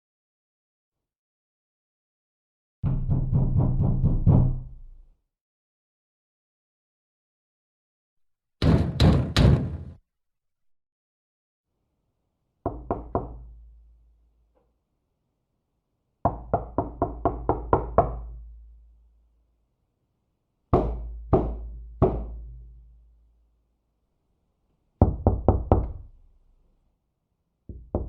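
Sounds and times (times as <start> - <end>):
heavy knocking on a door: 2.8 - 4.8, 8.6 - 10.0, 16.3 - 18.2, 20.8 - 22.4, 25.0 - 26.0, 27.7 - 28.0.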